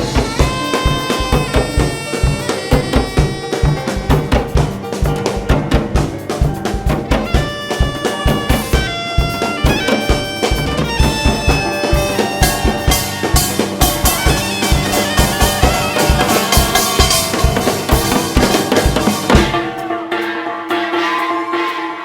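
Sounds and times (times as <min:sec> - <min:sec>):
wind instrument held notes: 0:00.0 - 0:06.1, 0:07.0 - 0:22.0
band playing: 0:00.0 - 0:22.0
drum kit fast beat: 0:00.0 - 0:22.0.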